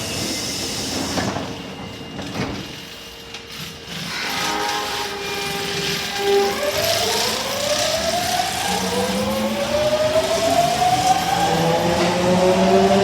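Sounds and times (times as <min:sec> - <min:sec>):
train traction motors whining: 0:00.0 - 0:13.0.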